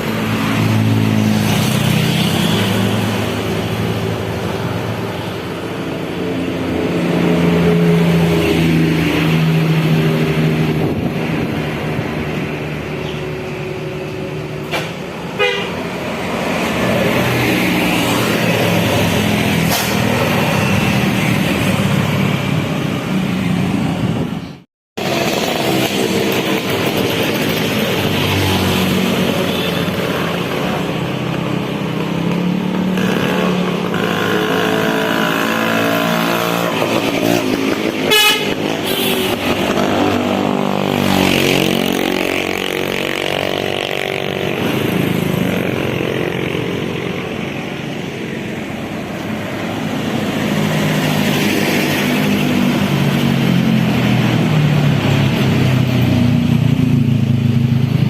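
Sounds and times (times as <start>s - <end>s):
bus engine: 0.0s - 58.0s
traffic noise: 0.0s - 58.0s
multi-tone air horn melody: 15.4s - 15.8s, 38.0s - 39.6s.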